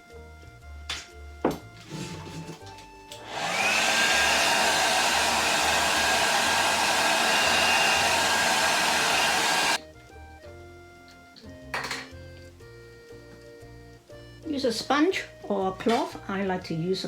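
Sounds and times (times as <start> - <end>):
hair dryer blowing: 3.1 - 9.8.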